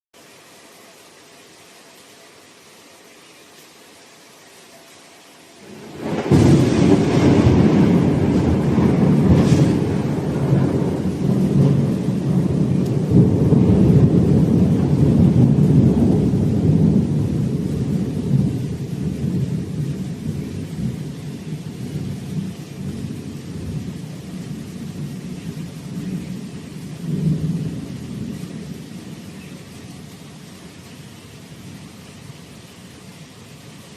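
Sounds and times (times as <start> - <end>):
rolling thunder: 5.6 - 30.2.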